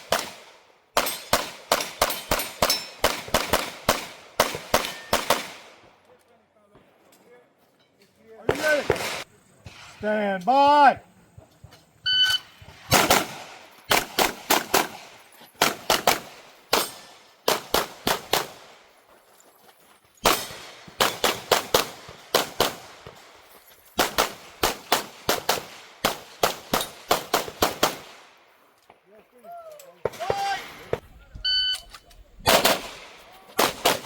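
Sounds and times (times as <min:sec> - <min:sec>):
pistol shots: 0:00.0 - 0:05.8, 0:08.5 - 0:09.9, 0:12.8 - 0:18.7, 0:20.2 - 0:23.2, 0:24.0 - 0:28.2, 0:32.4 - 0:34.0
shot timer beep: 0:12.1 - 0:12.5.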